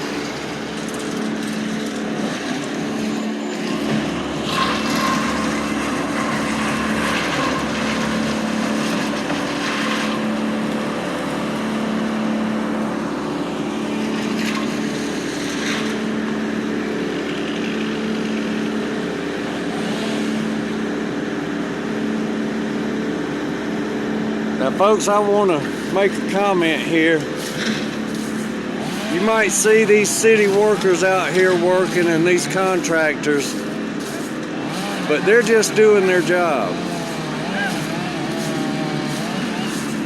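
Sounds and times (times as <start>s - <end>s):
rushing scraping noise: 0.0s - 11.4s, 25.3s - 40.0s
diesel engine running: 0.0s - 40.0s.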